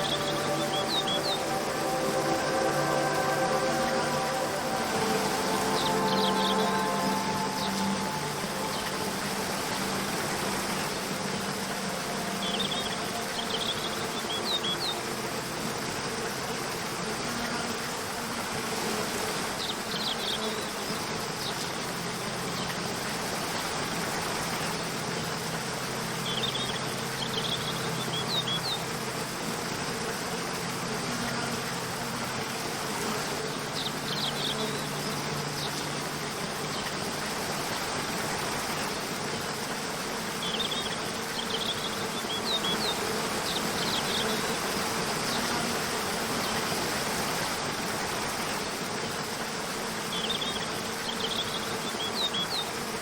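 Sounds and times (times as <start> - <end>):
high bird chirps: 0.0 - 14.8
waterfall rushing: 0.0 - 17.0.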